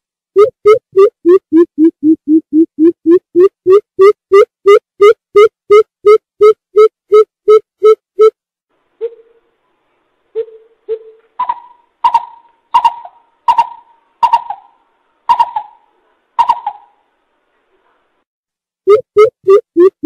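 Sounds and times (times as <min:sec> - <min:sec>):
bird hooting: 0:09.0 - 0:09.4, 0:10.4 - 0:17.0.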